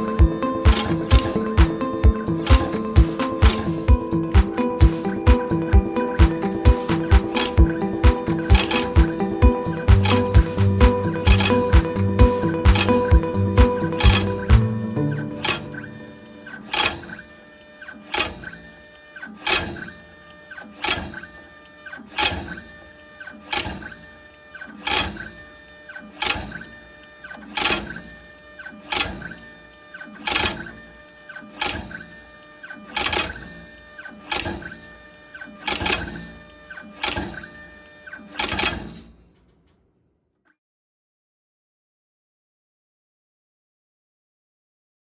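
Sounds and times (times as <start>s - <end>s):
cutter sharp cut: 0.0s - 39.0s
printer motor whir: 0.0s - 39.0s.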